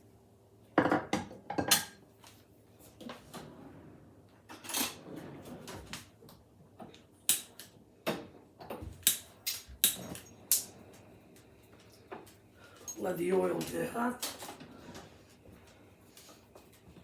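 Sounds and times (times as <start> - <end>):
pots and utensils clinking: 0.8 - 2.0.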